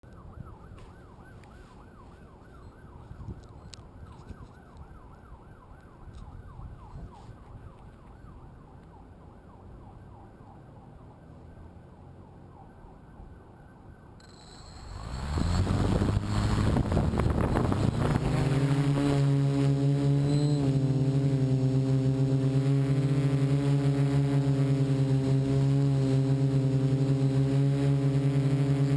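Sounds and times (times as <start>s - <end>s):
faint siren-like sweeping tone: 0.0s - 28.9s
wind rumble on microphone: 2.7s - 8.1s, 15.0s - 28.9s.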